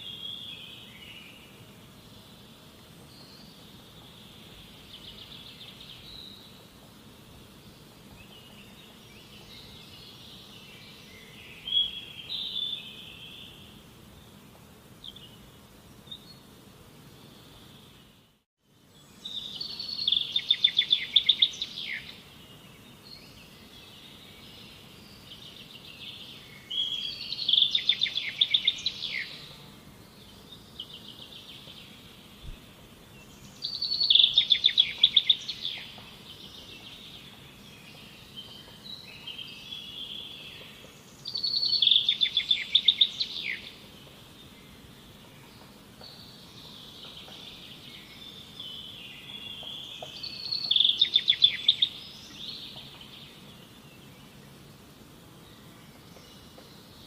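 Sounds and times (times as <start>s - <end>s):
songbird singing with trill: 0.0s - 1.4s, 3.1s - 6.6s, 8.2s - 13.7s, 19.0s - 32.6s, 33.2s - 54.4s
steady low outdoor hiss: 0.0s - 57.0s.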